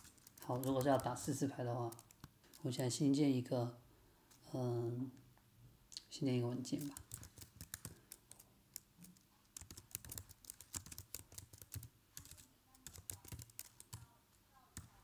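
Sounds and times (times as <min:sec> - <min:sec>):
keyboard typing: 0:00.0 - 0:02.9, 0:06.8 - 0:14.1, 0:14.7 - 0:15.0.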